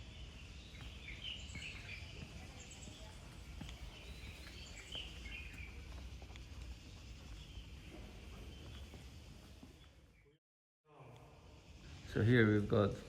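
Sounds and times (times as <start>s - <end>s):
bird chirps and calls: 0.0s - 5.9s.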